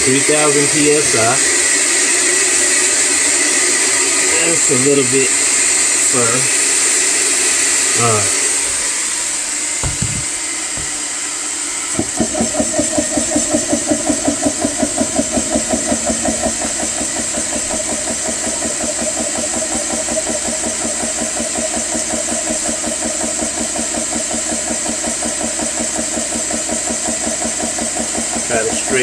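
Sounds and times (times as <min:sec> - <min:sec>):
air compressor pumping: 0:00.0 - 0:29.0
high hiss: 0:04.3 - 0:11.0.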